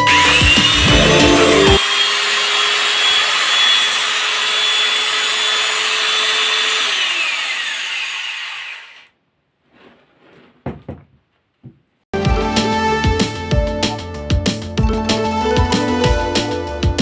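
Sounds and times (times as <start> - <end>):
electric motor whining: 0.0 - 9.0.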